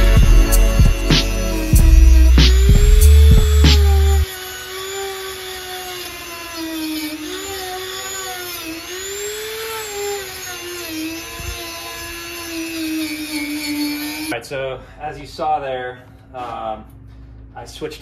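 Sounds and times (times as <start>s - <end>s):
rotary tool grinding metal: 0.0s - 14.3s.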